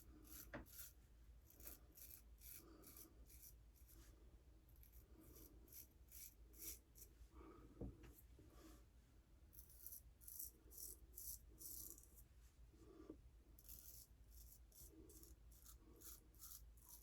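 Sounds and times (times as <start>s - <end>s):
straight razor scraping stubble: 0.2s - 3.9s, 13.6s - 17.0s.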